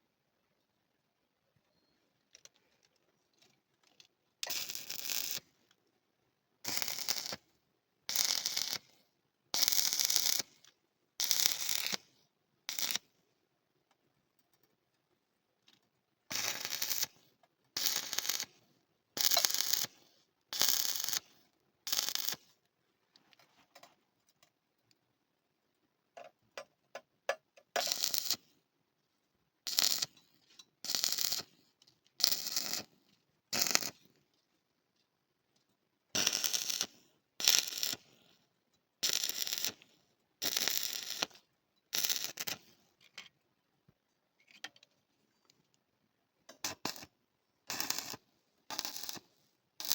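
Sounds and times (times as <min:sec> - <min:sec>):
electric arc welding crackling: 0:04.4 - 0:05.4, 0:06.7 - 0:07.4, 0:08.1 - 0:08.8, 0:09.6 - 0:10.4, 0:11.2 - 0:12.0, 0:12.7 - 0:13.0, 0:16.3 - 0:17.1, 0:17.8 - 0:18.5, 0:19.2 - 0:19.9, 0:20.6 - 0:21.2, 0:21.9 - 0:22.4, 0:27.8 - 0:28.4, 0:29.7 - 0:30.1, 0:30.9 - 0:31.5, 0:32.2 - 0:32.9, 0:33.6 - 0:34.0, 0:36.2 - 0:38.1, 0:39.0 - 0:39.8, 0:40.4 - 0:42.6, 0:46.6 - 0:47.1, 0:47.7 - 0:49.2.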